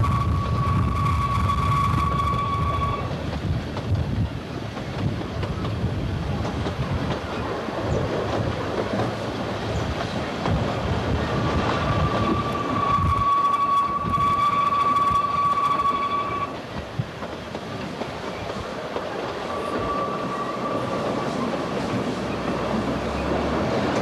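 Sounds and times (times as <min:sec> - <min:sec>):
wheels squealing on rails: 0:00.0 - 0:03.2, 0:11.1 - 0:16.9, 0:17.8 - 0:24.0
train running: 0:00.0 - 0:24.0.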